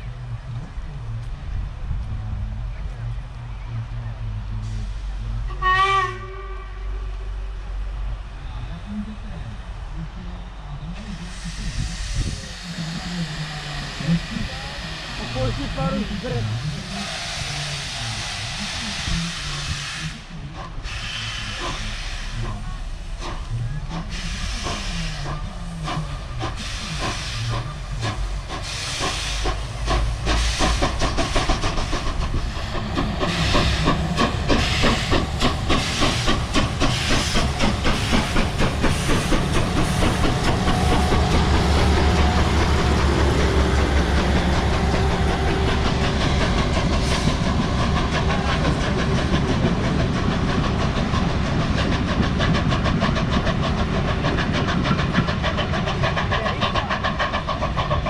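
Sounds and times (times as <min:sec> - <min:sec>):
steam locomotive exhaust chuffs: 0:03.8 - 0:58.0
steam hissing: 0:11.0 - 0:58.0.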